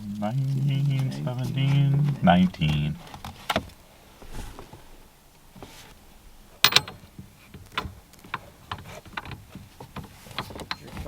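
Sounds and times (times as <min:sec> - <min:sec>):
hand tools clicking and knocking: 0:06.6 - 0:07.1.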